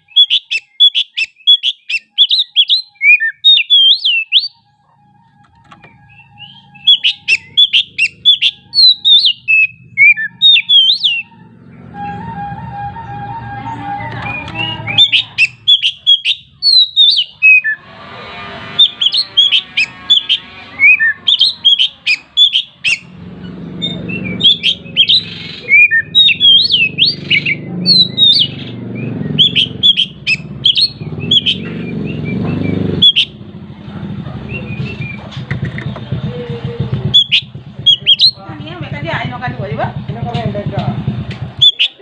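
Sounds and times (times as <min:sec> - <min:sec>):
bird singing whistled chirps: 0:00.0 - 0:04.7, 0:05.6 - 0:11.3, 0:13.6 - 0:17.8, 0:18.8 - 0:23.1, 0:23.8 - 0:33.4, 0:37.1 - 0:38.4, 0:41.6 - 0:42.0
steady low rumble: 0:33.3 - 0:41.5.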